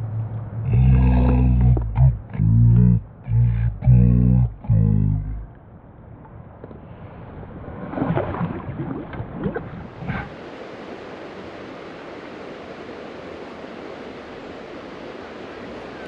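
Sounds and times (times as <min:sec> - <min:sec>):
pitched bending sounds: 0:00.0 - 0:05.5
wind on microphone: 0:06.8 - 0:12.5
river water rushing: 0:09.9 - 0:16.0.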